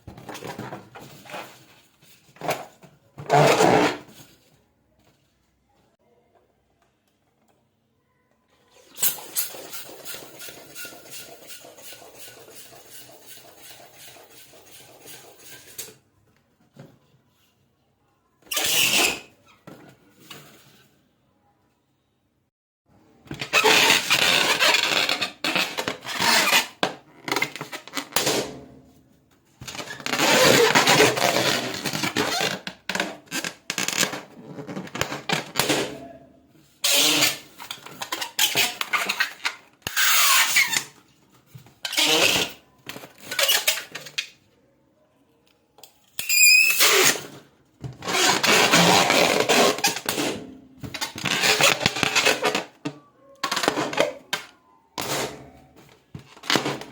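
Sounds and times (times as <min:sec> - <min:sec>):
rubber rubbing: 0:23.4 - 0:28.2, 0:47.9 - 0:52.8.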